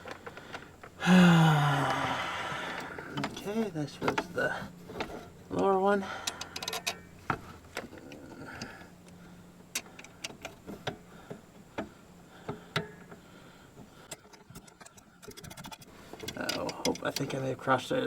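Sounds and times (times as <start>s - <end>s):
metal tool clicks and taps: 6.2s - 7.0s
ratchet clicking: 6.2s - 7.0s.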